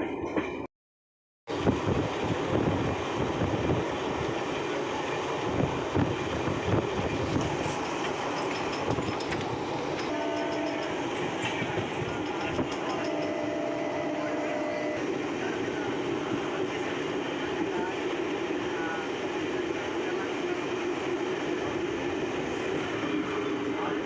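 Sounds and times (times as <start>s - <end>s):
electric train rumbling: 1.5s - 24.0s
wheels clacking over rail joints: 7.1s - 13.6s
train horn: 10.1s - 10.9s, 13.0s - 15.0s.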